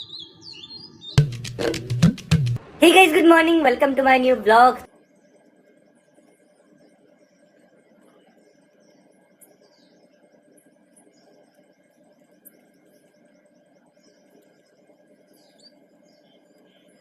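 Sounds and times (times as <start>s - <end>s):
small birds chirping: 0.0s - 17.0s
fast high ticks: 1.2s - 2.6s
steady low hum: 1.2s - 17.0s.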